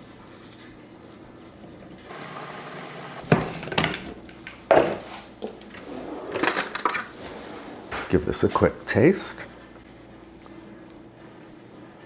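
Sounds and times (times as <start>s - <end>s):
utensils and dishes clinking: 6.3s - 7.2s.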